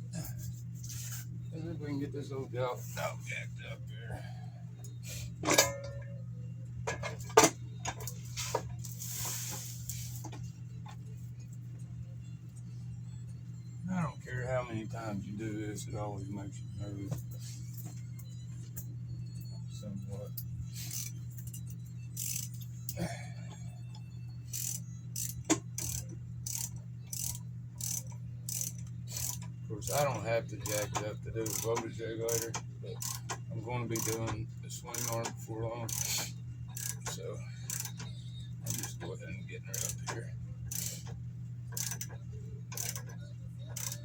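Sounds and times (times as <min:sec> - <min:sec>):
steady low hum: 0:00.0 - 0:44.0
metal jack clanking and clicking: 0:05.4 - 0:06.0
motorcycle jack scraping strokes: 0:08.3 - 0:10.3.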